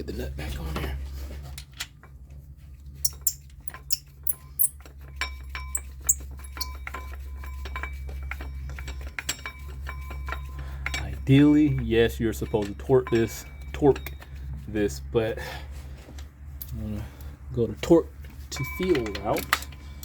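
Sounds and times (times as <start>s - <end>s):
metal clinks: 3.0s - 11.0s
ratchet wrench clicking: 3.1s - 4.7s, 5.8s - 6.7s.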